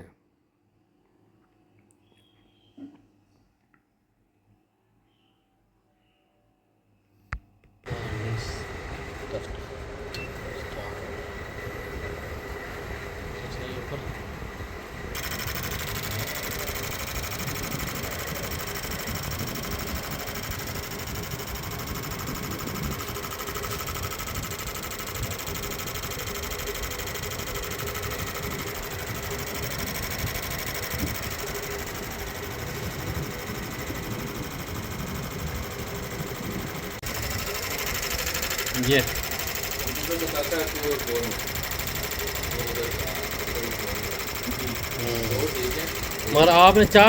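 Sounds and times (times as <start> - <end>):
fuel injectors chattering: 7.9 - 47.0
pump running: 7.9 - 47.0.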